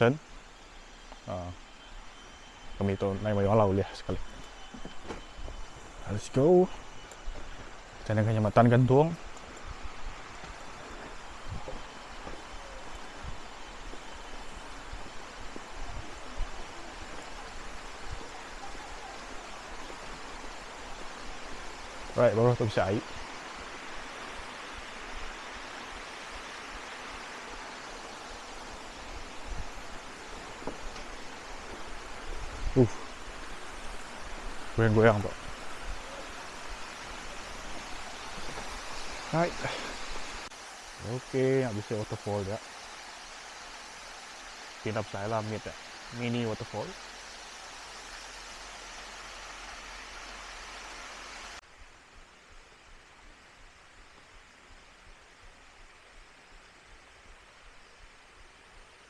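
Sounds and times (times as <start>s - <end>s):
quiet hiss: 0.0s - 59.0s
stream rushing: 7.8s - 52.2s.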